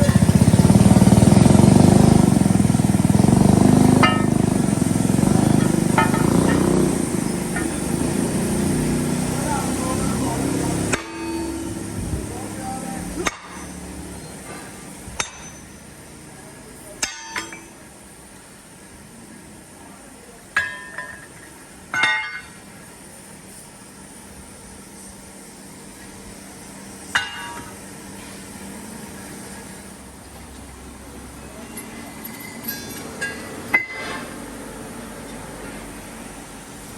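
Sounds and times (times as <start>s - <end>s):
low machine hum: 0.0s - 15.9s
metal clanking and knocking: 3.8s - 4.7s, 5.3s - 7.9s.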